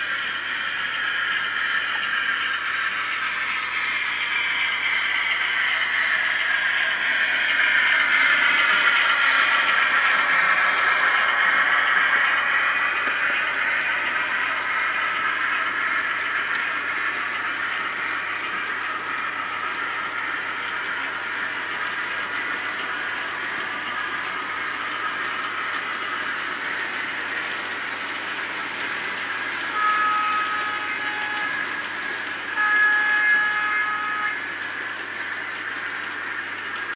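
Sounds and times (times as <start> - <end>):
model train wheels rattling on track: 0.0 - 36.9
train horn blasts: 29.7 - 31.6, 32.5 - 34.4.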